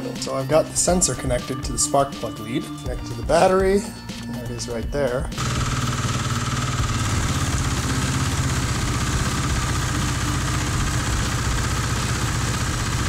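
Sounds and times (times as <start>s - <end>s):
motorcycle engine idling: 5.4s - 13.0s.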